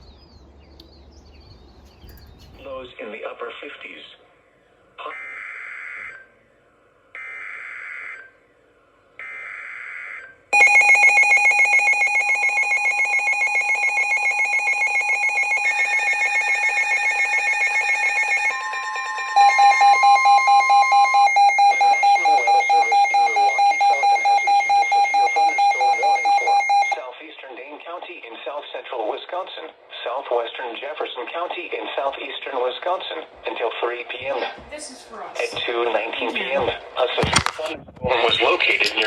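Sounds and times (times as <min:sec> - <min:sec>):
digital warning data bursts: 0:10.6 - 0:27.0.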